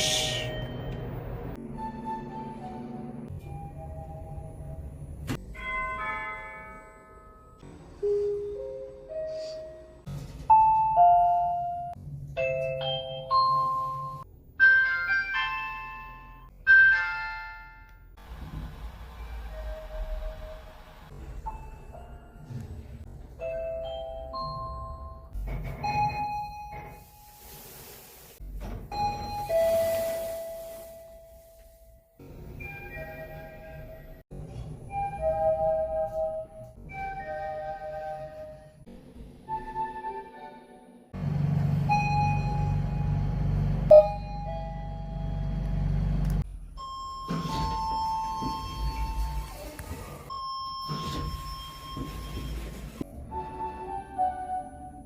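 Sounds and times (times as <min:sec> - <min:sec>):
elevator chime ringing: 0:10.6 - 0:17.6, 0:41.8 - 0:45.9, 0:50.3 - 0:52.8
elevator arrival chimes: 0:41.8 - 0:46.0, 0:50.3 - 0:53.0
two-note elevator chime: 0:43.9 - 0:45.7.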